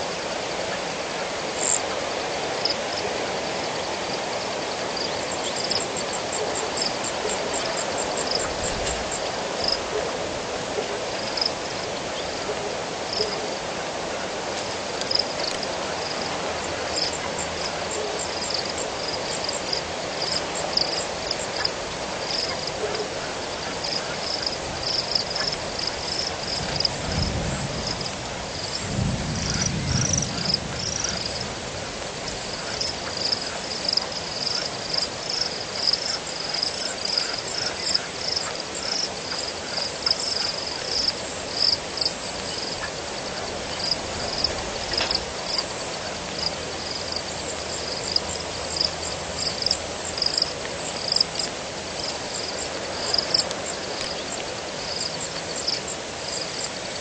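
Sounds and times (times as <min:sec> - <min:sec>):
frogs and insects calling: 0:00.0 - 0:57.0
steady hiss: 0:00.0 - 0:57.0.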